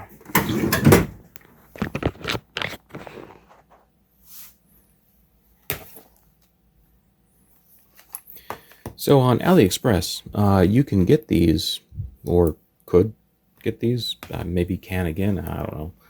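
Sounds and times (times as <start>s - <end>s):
knocks and clicks of objects moved: 0.0s - 3.8s.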